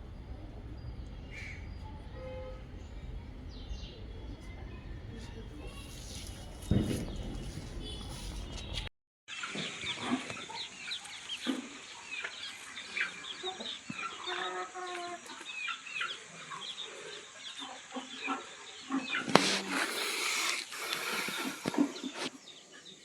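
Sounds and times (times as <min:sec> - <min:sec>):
chickens clucking: 0:09.4 - 0:22.3.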